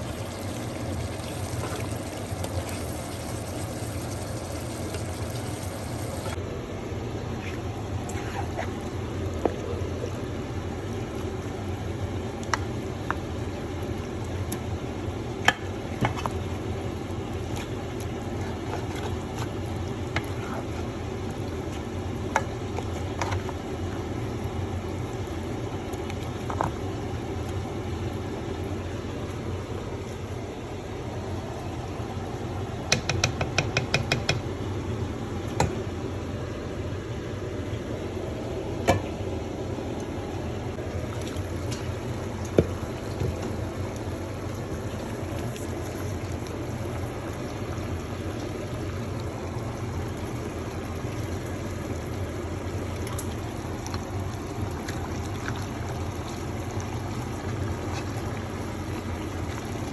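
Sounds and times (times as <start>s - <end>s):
soup bubbling: 0.0s - 6.4s, 40.7s - 59.9s.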